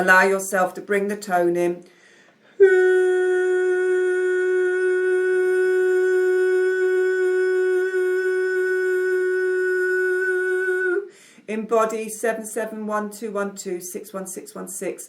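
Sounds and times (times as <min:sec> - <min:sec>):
woman toning a long note: 0:02.6 - 0:11.1.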